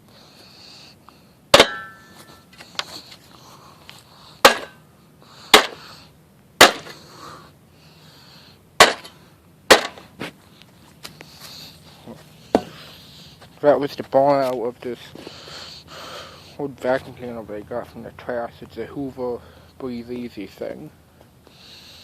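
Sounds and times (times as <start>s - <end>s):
vacuum cleaner being struck: 1.6s - 2.2s
metallic ring: 1.6s - 2.5s.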